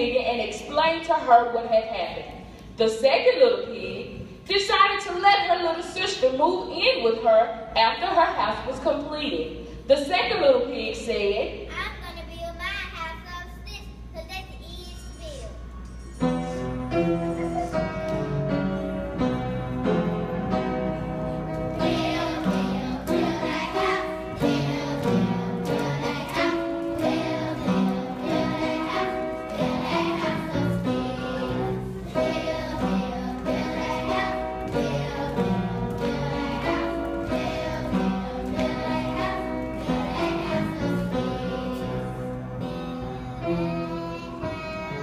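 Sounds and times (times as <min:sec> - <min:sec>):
piano accompaniment: 0:15.6 - 0:45.0
children singing in unison: 0:21.8 - 0:45.0.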